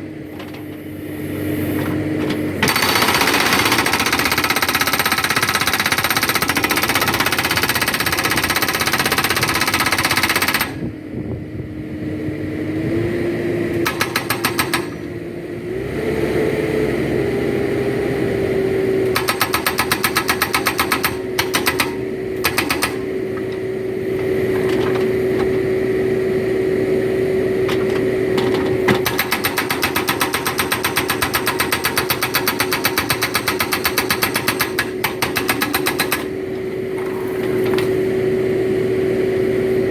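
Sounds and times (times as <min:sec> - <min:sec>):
backhoe engine running: 0:00.0 - 0:39.9
hydraulic rock breaker hammering: 0:01.7 - 0:10.9, 0:13.8 - 0:15.2, 0:19.1 - 0:26.0, 0:27.6 - 0:38.2.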